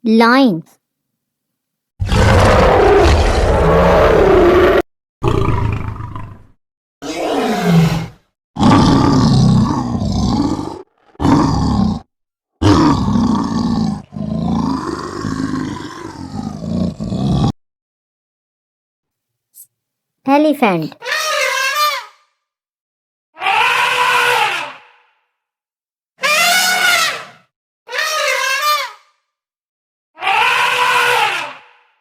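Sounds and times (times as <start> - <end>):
lion roaring and growling: 2.0 - 17.5.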